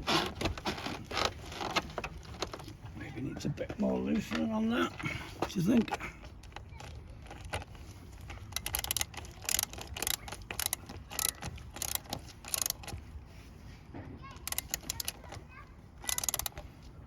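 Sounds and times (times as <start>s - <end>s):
sharp clicks: 6.5s - 13.0s, 14.4s - 15.4s, 16.0s - 16.6s.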